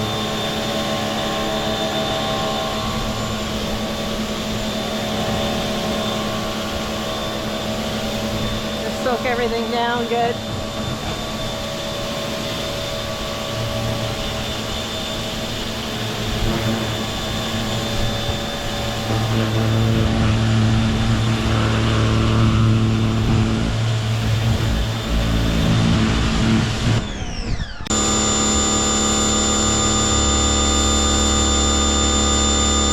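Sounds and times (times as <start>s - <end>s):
pressure washer running: 13.2s - 27.0s, 27.9s - 32.9s.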